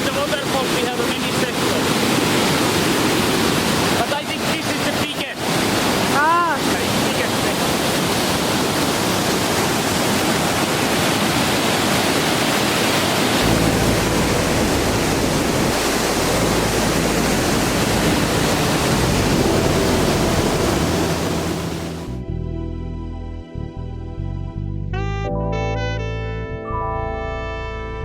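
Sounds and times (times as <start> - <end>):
rushing water roar: 0.0 - 22.1.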